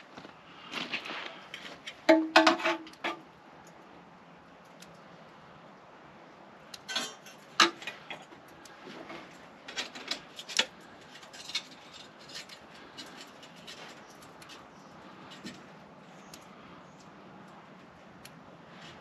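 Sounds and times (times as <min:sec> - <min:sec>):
sharp clicks and metallic clinks: 0:06.7 - 0:08.8.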